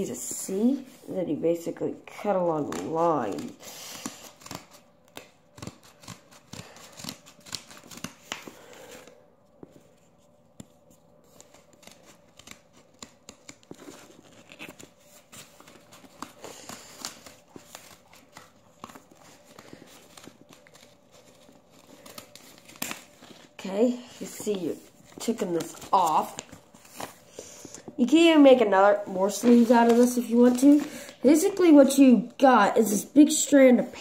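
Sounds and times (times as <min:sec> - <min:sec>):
scissors snipping paper: 0:02.3 - 0:08.5, 0:11.3 - 0:26.6.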